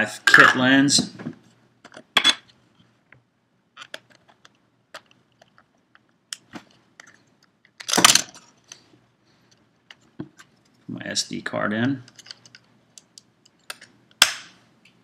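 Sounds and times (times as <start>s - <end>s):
plastic clicks and rattles: 3.8s - 8.8s, 12.0s - 13.9s.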